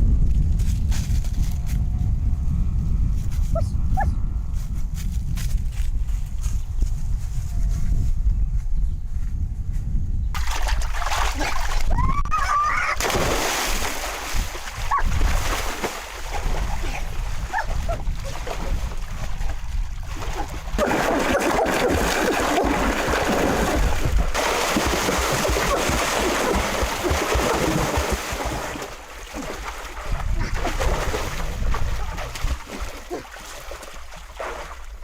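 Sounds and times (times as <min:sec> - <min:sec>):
water splashing and sloshing: 0:10.4 - 0:35.0.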